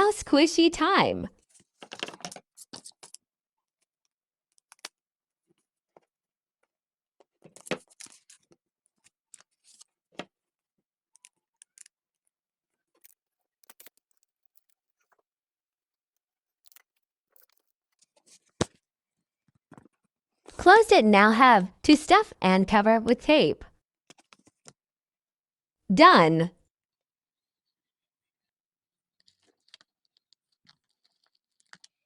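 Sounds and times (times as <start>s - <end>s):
paper rustling and crinkling: 1.4s - 3.2s, 7.2s - 10.3s, 12.9s - 15.1s, 16.7s - 18.8s, 29.2s - 32.0s.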